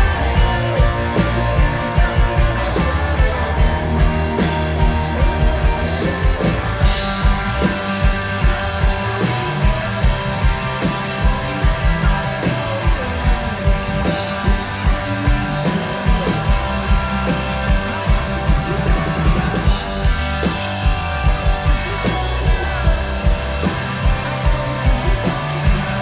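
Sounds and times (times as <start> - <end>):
drums beating: 0.0 - 26.0
live rock band instrumental: 0.0 - 26.0.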